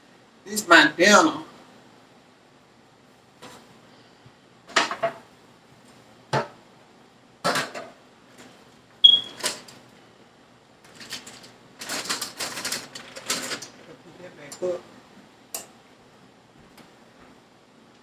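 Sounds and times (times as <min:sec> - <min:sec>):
kitchen items knocking and clattering: 0:04.7 - 0:05.3, 0:06.3 - 0:06.6, 0:07.4 - 0:08.0.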